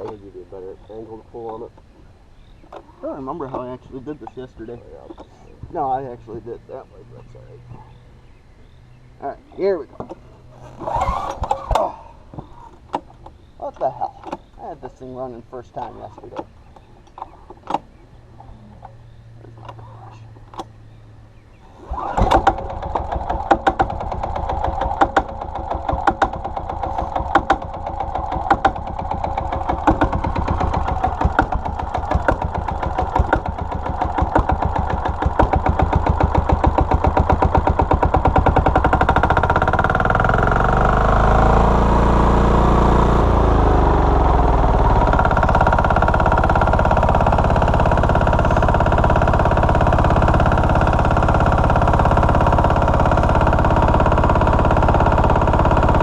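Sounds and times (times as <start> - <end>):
diesel generator engine running: 17.9 - 56.0.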